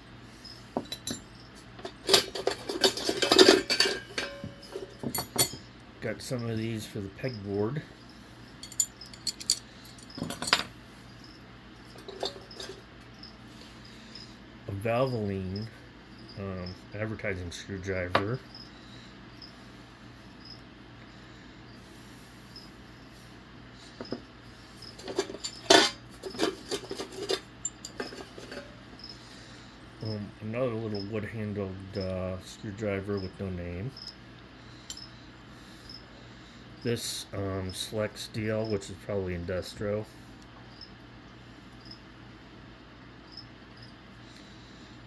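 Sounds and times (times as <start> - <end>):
metal hooks clinking: 0.8 - 5.7, 8.6 - 10.8, 11.9 - 12.8, 25.0 - 28.7.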